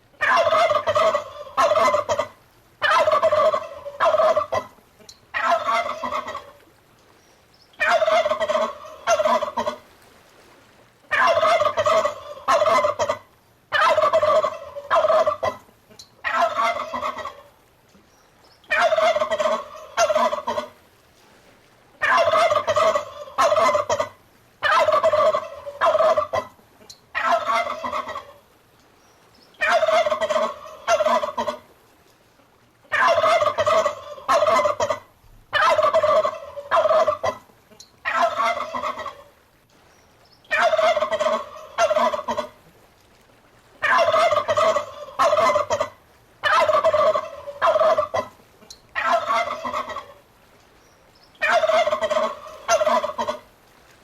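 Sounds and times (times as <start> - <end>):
turkey gobbling: 0.2 - 6.7, 7.8 - 9.8, 11.1 - 17.5, 18.6 - 20.8, 22.0 - 28.5, 29.5 - 31.6, 32.8 - 39.3, 40.4 - 42.6, 43.8 - 50.2, 51.4 - 53.5.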